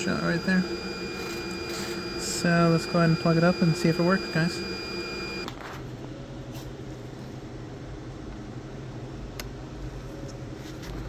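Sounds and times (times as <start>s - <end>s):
low hum: 0.0s - 5.5s.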